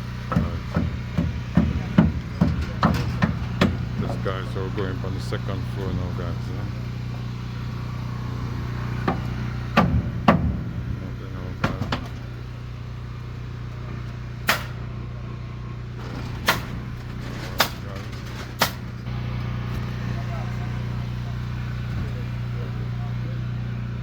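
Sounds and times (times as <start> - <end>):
steady low hum: 0.0 - 24.0
sharp knocks on timber: 0.3 - 4.0, 9.0 - 10.9, 11.6 - 12.2, 14.5 - 14.8.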